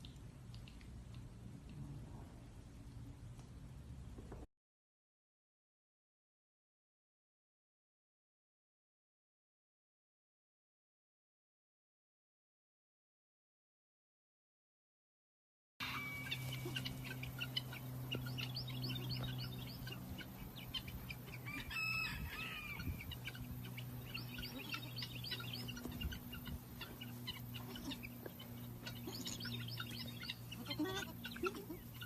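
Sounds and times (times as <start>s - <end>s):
steady low hum: 0.0s - 4.4s, 15.8s - 32.0s
birds chirping: 15.8s - 32.0s.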